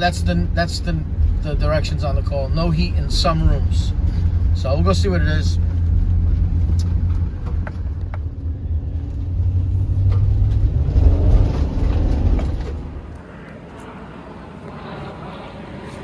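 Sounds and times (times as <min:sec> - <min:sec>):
car road and engine rumble: 0:00.0 - 0:16.0.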